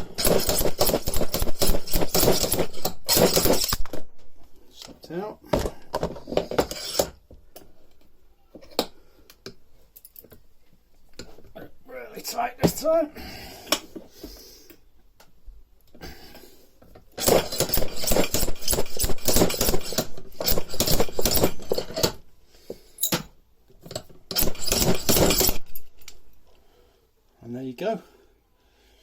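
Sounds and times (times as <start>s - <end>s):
slide hammer clanking on metal: 23.9s - 26.1s.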